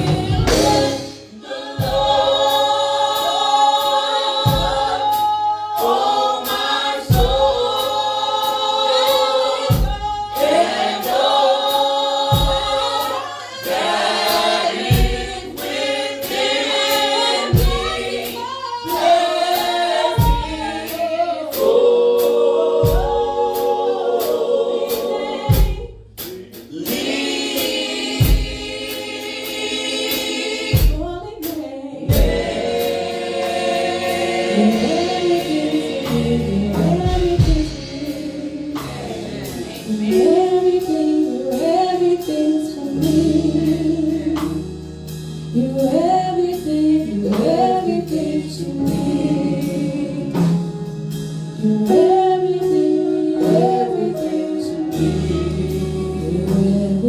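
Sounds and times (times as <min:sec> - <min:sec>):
deep drum hits: 0:00.0 - 0:02.8, 0:04.5 - 0:05.1, 0:07.0 - 0:07.8, 0:13.7 - 0:19.2, 0:19.8 - 0:21.0, 0:28.1 - 0:29.0, 0:32.1 - 0:40.6
gospel choir singing: 0:00.0 - 0:57.0
live band: 0:00.0 - 0:57.0.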